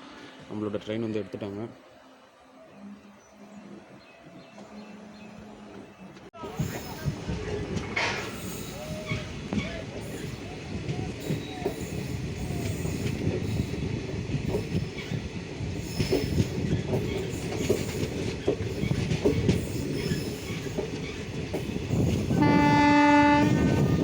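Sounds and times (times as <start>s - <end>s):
train wheels clattering on rails: 5.6s - 24.0s
train horn blast: 22.3s - 24.0s.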